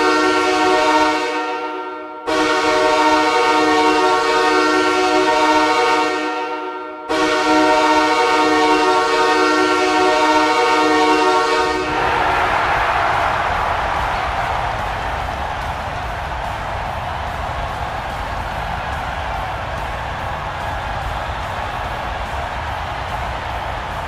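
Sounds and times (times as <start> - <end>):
goal horn blasts: 0.0 - 12.2
crowd roar: 7.9 - 24.0.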